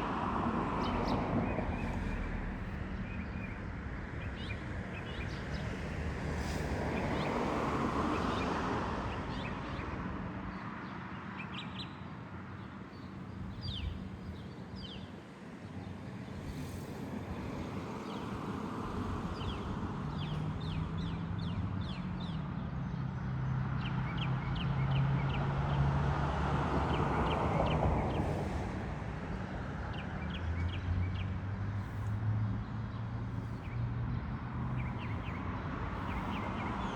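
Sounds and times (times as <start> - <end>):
birds chirping: 33.0 - 36.9.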